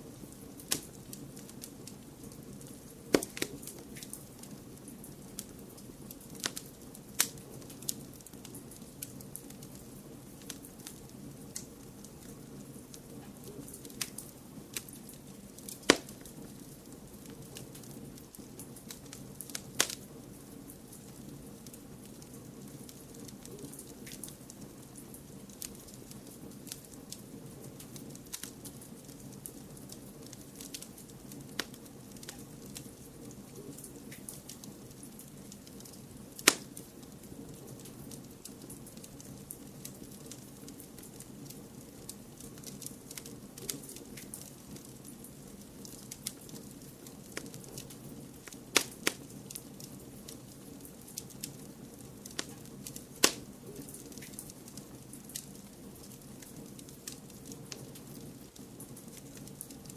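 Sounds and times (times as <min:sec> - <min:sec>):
fire crackles and pops: 0:00.0 - 0:59.9
fire rushing: 0:00.1 - 0:22.2.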